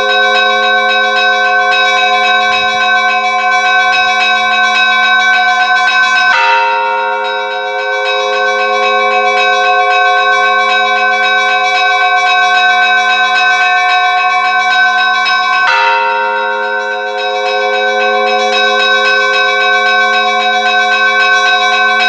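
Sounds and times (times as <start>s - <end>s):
heavy strike of large bell: 0.0s - 22.0s
small church bells striking: 0.0s - 22.0s
sustained bell ringing tones: 0.0s - 22.0s.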